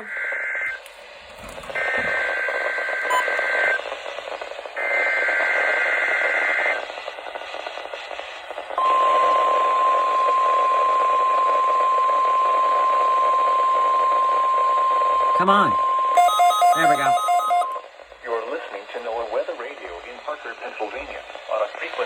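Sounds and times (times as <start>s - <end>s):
single-pitch warning alarm tone: 3.0s - 3.8s, 8.8s - 17.8s
two-pitch data warble: 8.8s - 17.8s.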